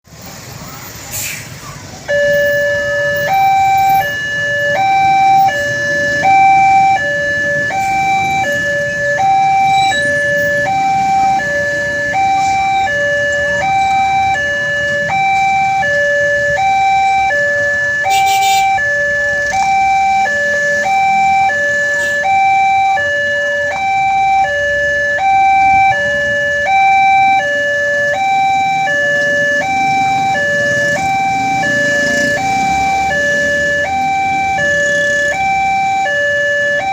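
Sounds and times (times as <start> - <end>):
two-tone level crossing alarm: 2.1 - 36.9.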